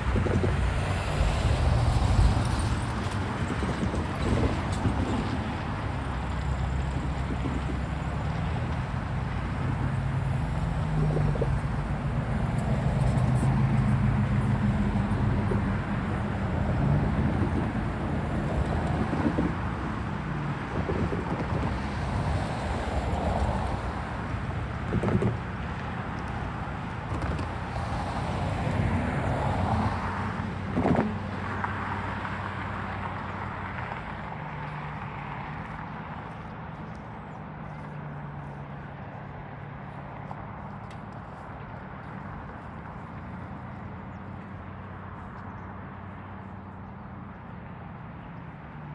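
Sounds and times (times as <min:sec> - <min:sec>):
train wheels rumbling on rail: 0:00.0 - 0:19.8.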